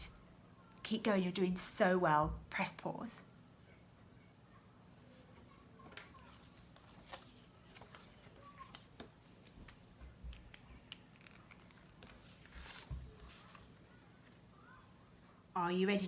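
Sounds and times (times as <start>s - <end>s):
faint clicks and rustles: 5.0s - 15.0s.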